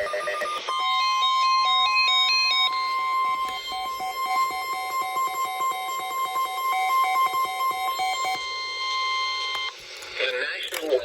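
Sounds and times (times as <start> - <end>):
stepped beeping notes: 0.0 - 9.7
steady high alarm tone: 0.0 - 9.8.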